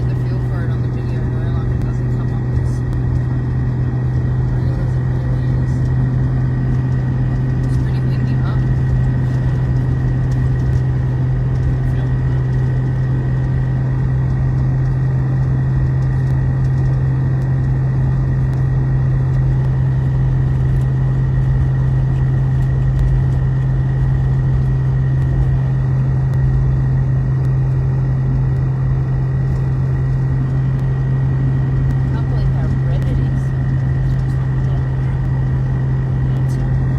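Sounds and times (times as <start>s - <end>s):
car interior engine and road drone: 0.0s - 36.9s
steady low hum: 0.0s - 36.9s.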